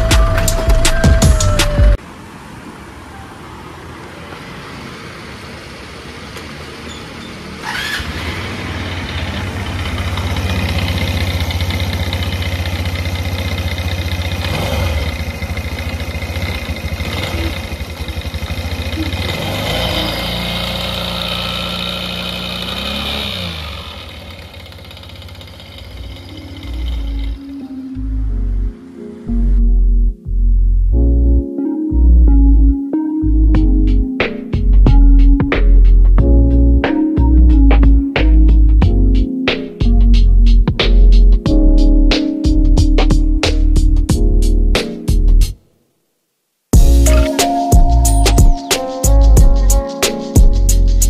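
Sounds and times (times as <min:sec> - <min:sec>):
scooter engine with abnormal noise: 0:04.0 - 0:27.8.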